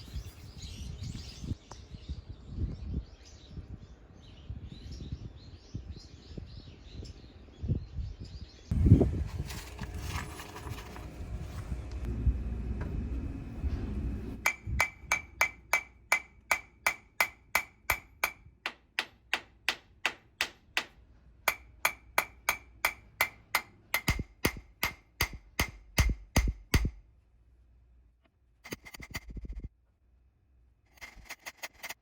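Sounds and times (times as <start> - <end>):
low rumbling noise: 8.7 - 15.4
hammer striking metal: 14.4 - 27.0.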